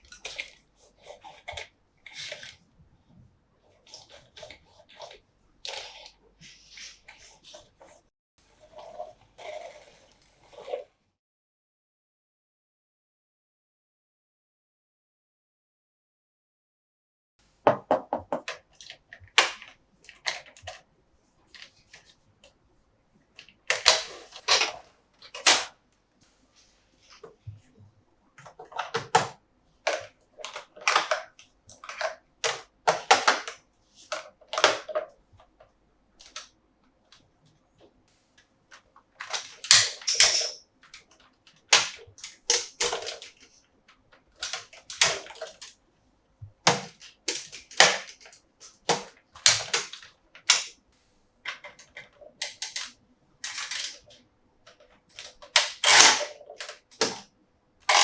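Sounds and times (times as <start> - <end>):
plastic toy pieces clicking: 41.7 - 43.4, 55.1 - 57.2.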